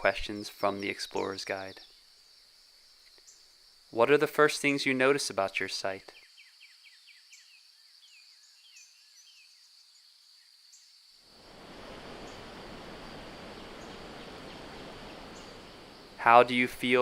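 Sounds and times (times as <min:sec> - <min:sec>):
insects trilling: 0:00.0 - 0:17.0
bird chirps: 0:06.0 - 0:10.9, 0:12.1 - 0:17.0
broad rushing noise: 0:11.4 - 0:16.5.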